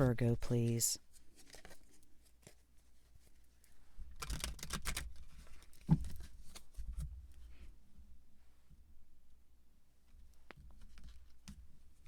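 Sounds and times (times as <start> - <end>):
cards shuffling and rustling: 1.1 - 2.6.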